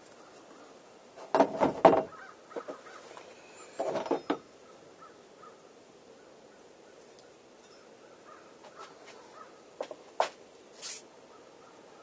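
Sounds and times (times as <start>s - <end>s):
harsh bird cawing: 2.1s - 3.8s, 4.4s - 7.1s, 7.8s - 9.8s, 11.3s - 12.0s.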